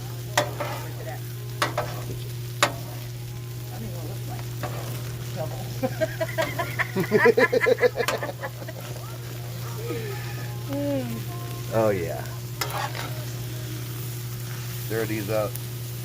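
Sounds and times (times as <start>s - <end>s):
food sizzling on a griddle: 0.0s - 16.0s
metal spatula scraping griddle: 0.4s - 3.1s, 4.6s - 5.8s, 12.6s - 13.8s.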